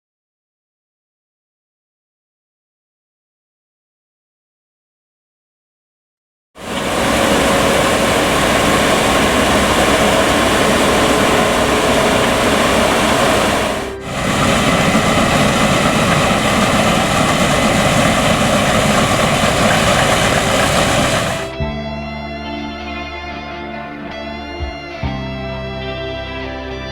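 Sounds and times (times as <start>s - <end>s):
combine harvester mechanical drone: 6.6s - 21.6s
whining tones: 6.6s - 21.6s.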